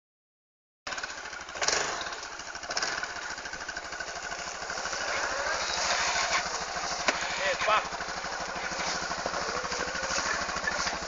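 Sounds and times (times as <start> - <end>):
atv engine puttering: 0.9 - 11.0.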